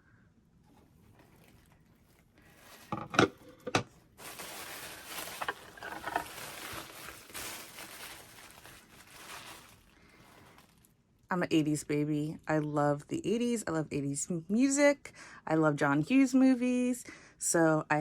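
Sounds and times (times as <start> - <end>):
packaging rustling and crinkling: 0.7 - 11.0.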